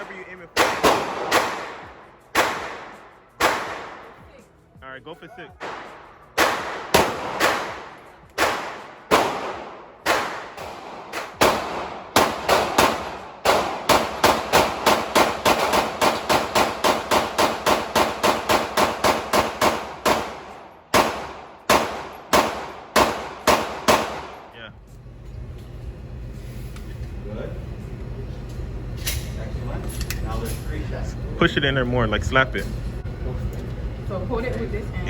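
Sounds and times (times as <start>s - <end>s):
pistol gunshots: 0.0s - 4.2s, 5.6s - 24.6s.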